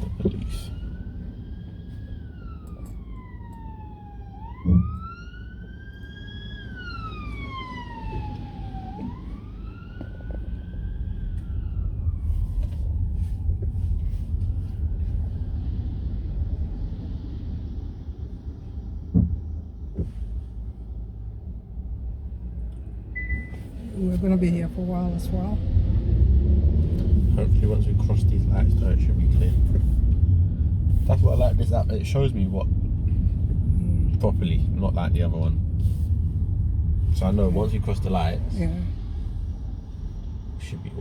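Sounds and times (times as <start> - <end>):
car cabin rumble: 0.0 - 1.3, 7.1 - 25.6
police siren wailing: 0.0 - 15.8.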